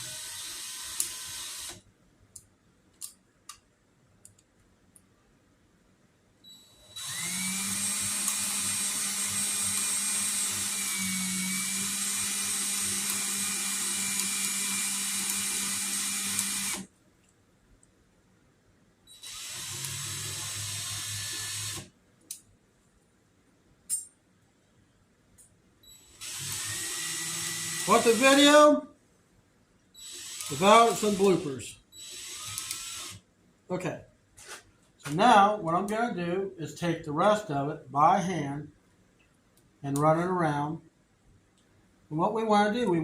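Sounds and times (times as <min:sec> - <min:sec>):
electric drill spinning: 0:00.0 - 0:01.8, 0:06.8 - 0:16.9, 0:19.2 - 0:21.9, 0:26.1 - 0:28.6, 0:30.0 - 0:33.2.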